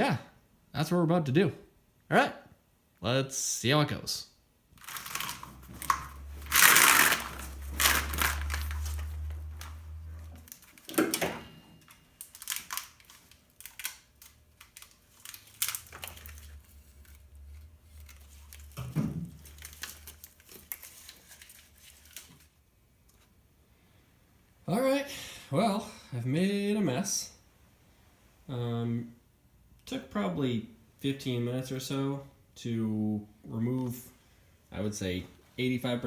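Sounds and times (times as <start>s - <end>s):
steady low hum: 2.7s - 20.8s
plastic and tape crinkling and tearing: 4.8s - 11.2s, 11.8s - 23.3s.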